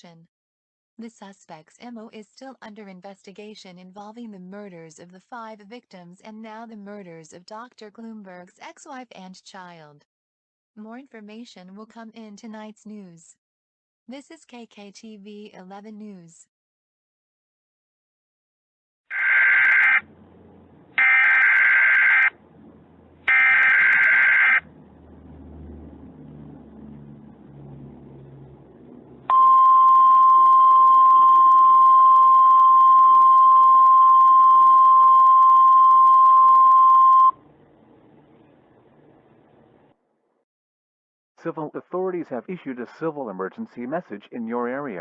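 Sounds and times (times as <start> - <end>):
steady attention tone: 19.1 - 37.4
warbling digital data tones: 21.0 - 22.3.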